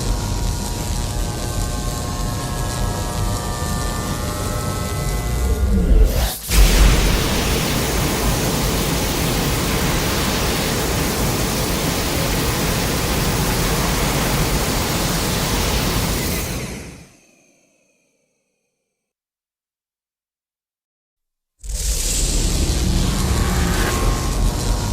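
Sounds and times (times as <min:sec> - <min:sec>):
rushing noise with low rumble: 0:21.8 - 0:24.9.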